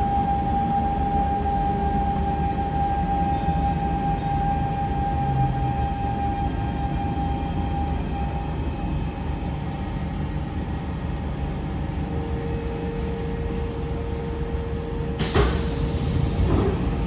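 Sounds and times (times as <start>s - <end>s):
metro train rumbling: 0.0s - 17.0s.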